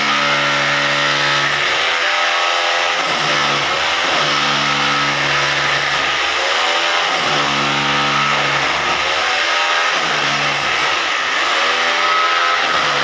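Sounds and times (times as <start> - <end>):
hammer drill motor whining: 0.0 - 13.0.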